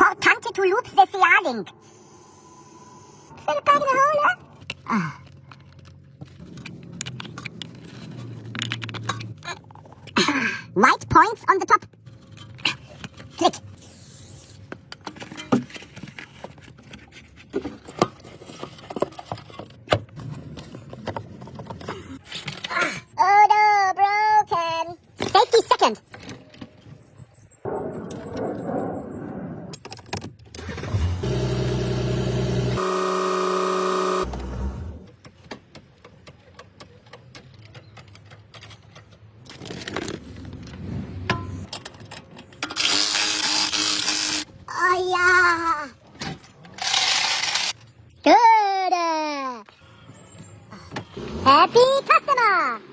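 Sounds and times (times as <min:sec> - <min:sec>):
tools clicking and scraping: 0:04.5 - 0:10.2, 0:35.1 - 0:44.5, 0:46.2 - 0:48.1.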